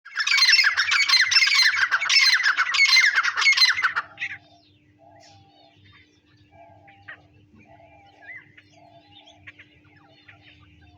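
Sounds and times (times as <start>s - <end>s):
francolin calling harshly: 0.1s - 5.7s
faint bird chirps: 0.1s - 10.9s
steady low hum: 0.6s - 10.9s.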